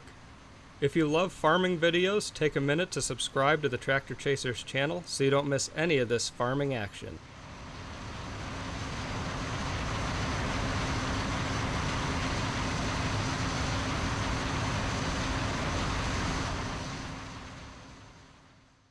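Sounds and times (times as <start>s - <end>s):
combine harvester running: 7.3s - 18.5s.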